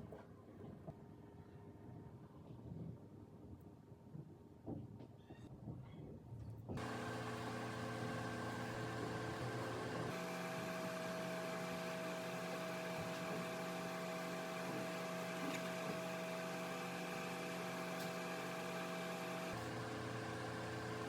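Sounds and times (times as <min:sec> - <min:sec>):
machine hum: 0:06.8 - 0:21.0.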